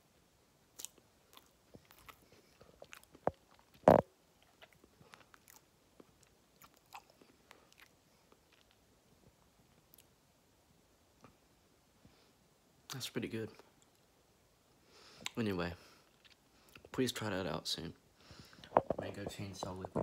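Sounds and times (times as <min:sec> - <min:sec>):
person chewing cracker: 0:00.7 - 0:08.8, 0:16.0 - 0:16.9.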